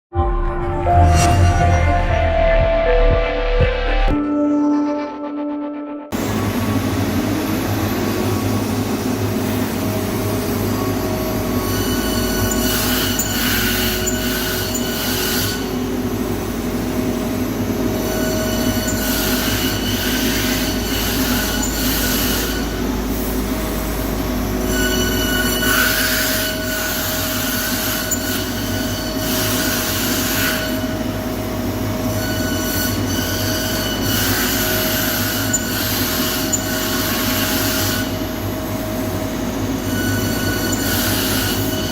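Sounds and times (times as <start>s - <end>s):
machine hum: 0.2s - 32.2s
router spindle whine: 6.2s - 41.9s.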